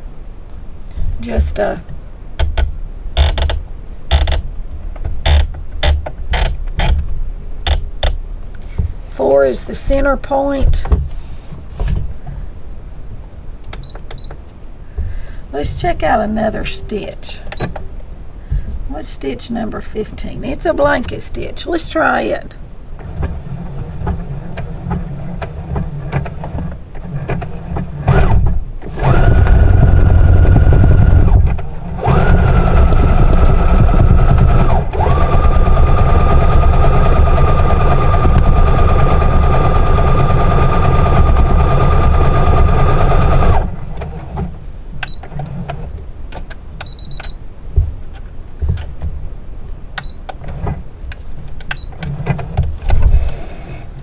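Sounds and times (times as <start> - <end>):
sewing machine sewing: 23.0 - 44.5
light clicks and knocks: 44.4 - 49.2.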